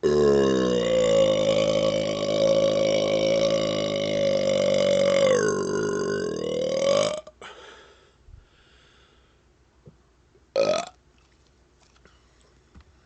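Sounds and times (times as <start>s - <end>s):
man burping: 0.0s - 7.5s, 10.6s - 11.0s.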